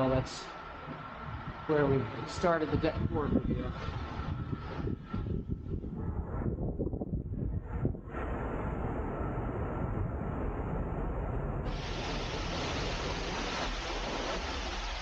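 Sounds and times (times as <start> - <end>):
continuous hiss: 0.0 - 4.2, 11.7 - 15.0
wind noise on microphone: 0.0 - 15.0.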